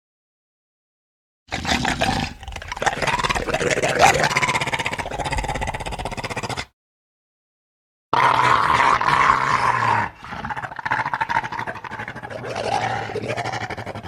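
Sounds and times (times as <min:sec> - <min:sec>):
wolf growling: 0:01.5 - 0:06.7, 0:08.2 - 0:14.0.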